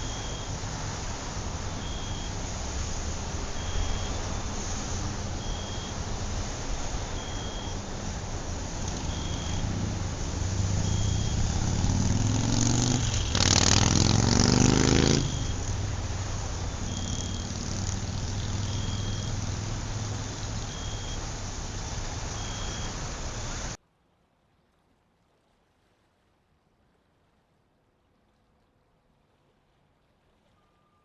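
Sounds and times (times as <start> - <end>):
road traffic rumble: 0.0 - 23.8
vehicle accelerating past: 0.0 - 23.8
short high beep: 3.6 - 4.5, 5.4 - 6.0, 7.2 - 7.8.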